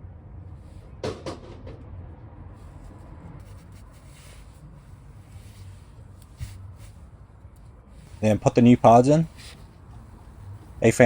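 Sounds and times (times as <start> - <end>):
sharp knocks: 1.0 - 1.9.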